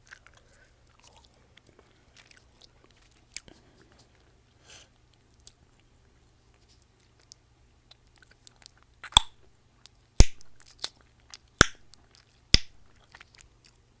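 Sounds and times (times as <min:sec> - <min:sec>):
gum chewing: 0:00.0 - 0:04.4, 0:06.8 - 0:13.9
gum popping: 0:07.2 - 0:09.4, 0:10.2 - 0:13.8
wet mouth clicks: 0:07.2 - 0:09.4.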